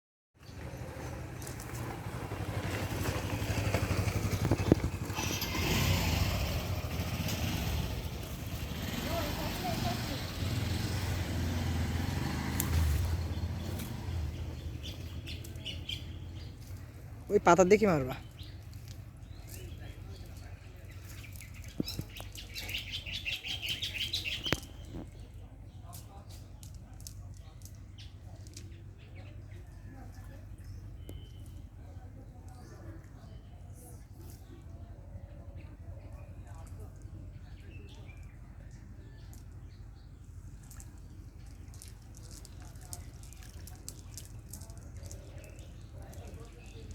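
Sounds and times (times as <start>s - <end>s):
small engine running: 0.5s - 15.5s
bird chirping: 13.0s - 25.9s, 30.6s - 31.7s.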